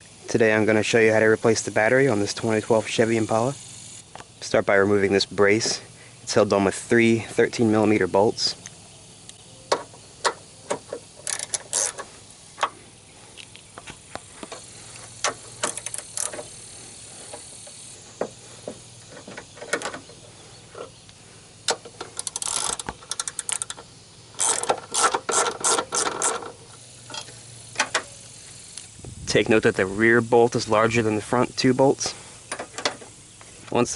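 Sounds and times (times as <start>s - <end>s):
ratchet wrench clicking: 1.5s - 4.4s, 8.6s - 12.8s, 14.2s - 20.2s, 21.6s - 29.0s.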